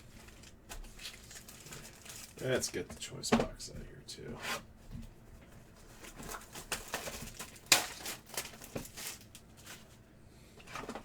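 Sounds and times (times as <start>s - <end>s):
plastic wrap crinkling: 0.0s - 2.8s, 5.6s - 10.0s.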